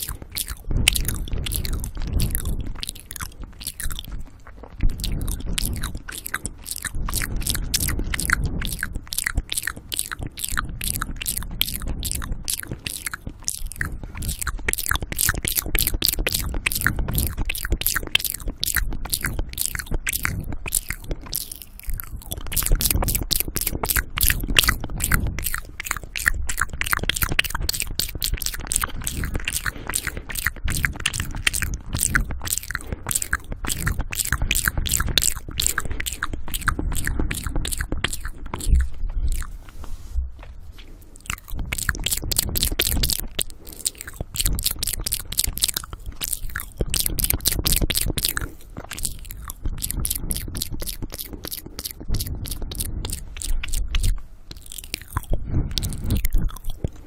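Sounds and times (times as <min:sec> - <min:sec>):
lip smacks and tongue clicks: 0:00.0 - 0:57.0
heavy breathing into microphone: 0:55.3 - 0:56.2.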